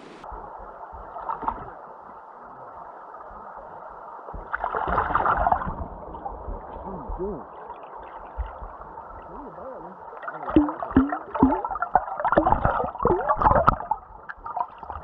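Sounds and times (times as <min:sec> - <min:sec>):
stream running: 0:00.0 - 0:15.0.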